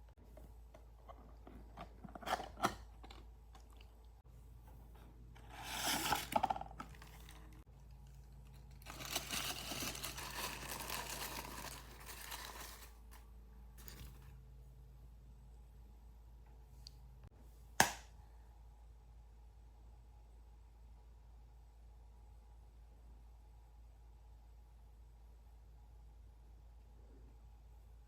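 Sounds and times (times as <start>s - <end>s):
packaging crinkling: 8.5s - 13.2s
packaging tearing: 8.8s - 13.2s.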